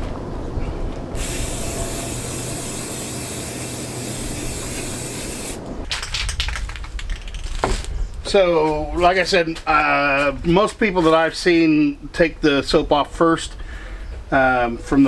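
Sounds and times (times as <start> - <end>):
spray can hissing: 1.2 - 5.9.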